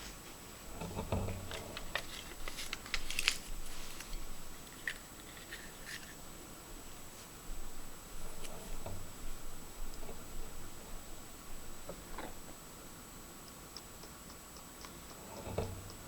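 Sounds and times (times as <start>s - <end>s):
plastic capsule crinkles and clicks: 1.5s - 6.2s.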